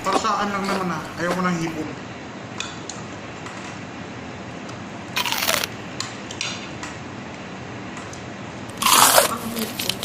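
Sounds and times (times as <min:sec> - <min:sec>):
crunch of biting crisp food: 0:05.2 - 0:05.7, 0:08.8 - 0:09.9.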